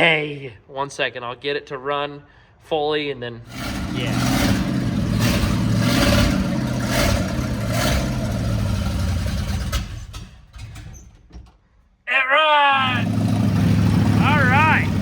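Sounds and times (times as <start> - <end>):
truck engine running rough: 3.5 - 10.4, 12.8 - 15.0.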